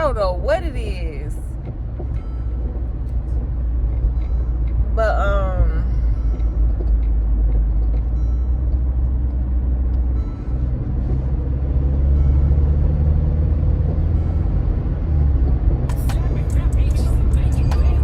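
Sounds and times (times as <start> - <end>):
engine and tyre rumble: 0.0 - 18.0.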